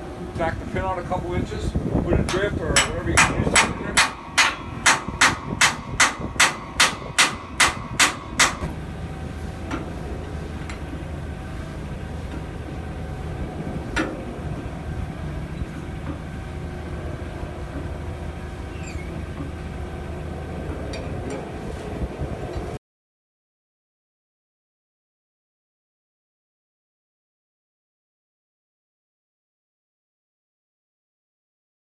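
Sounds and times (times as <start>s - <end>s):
steady low hum: 0.0s - 22.8s
hammer striking steel pin: 2.3s - 8.7s.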